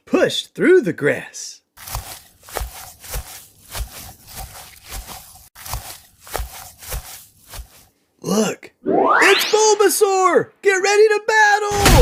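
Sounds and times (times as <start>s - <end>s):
footsteps through tall grass: 1.8s - 8.0s.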